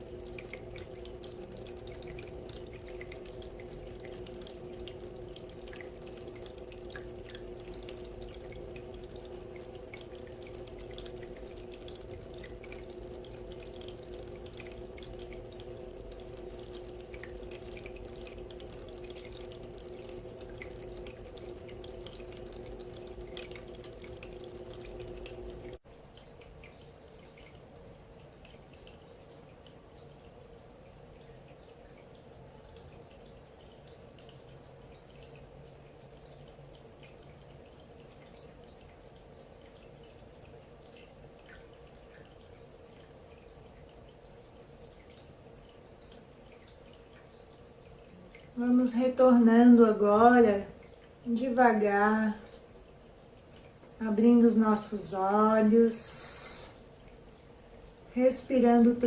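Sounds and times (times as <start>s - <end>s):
low hum: 0.0s - 25.8s
water fountain trickling: 0.0s - 59.0s.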